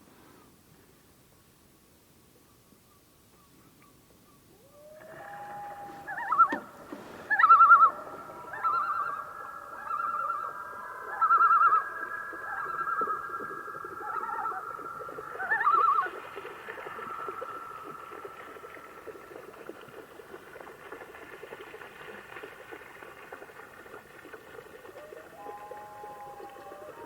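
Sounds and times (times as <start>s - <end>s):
loons wailing: 4.6s - 18.6s, 25.0s - 27.0s
loons tremolo laughing calls: 5.0s - 16.2s.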